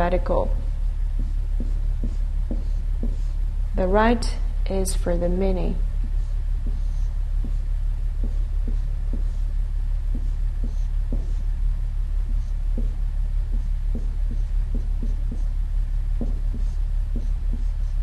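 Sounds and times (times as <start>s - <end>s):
low electrical hum: 0.0s - 18.0s
pen scratching paper: 1.2s - 4.0s, 6.0s - 9.5s, 10.1s - 11.5s, 12.2s - 18.0s.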